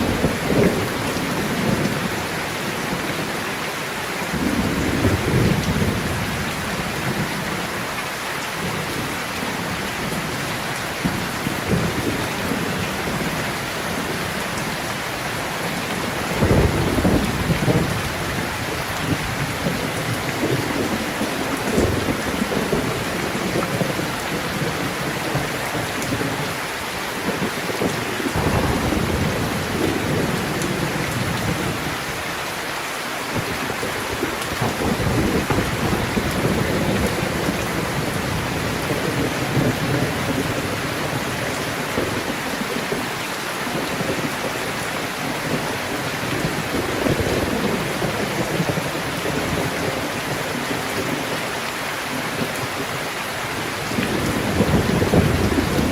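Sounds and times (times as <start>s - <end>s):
thunder rumbling: 0.0s - 3.2s, 4.3s - 7.6s, 8.6s - 26.6s, 27.2s - 32.5s, 33.3s - 41.4s, 53.6s - 55.9s
heavy rain falling: 0.0s - 55.9s.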